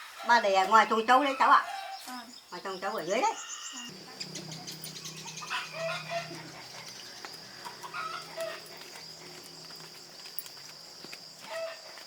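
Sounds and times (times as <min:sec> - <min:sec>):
high-pitched insect drone: 0:02.2 - 0:12.0
farm animal calls: 0:02.8 - 0:10.1.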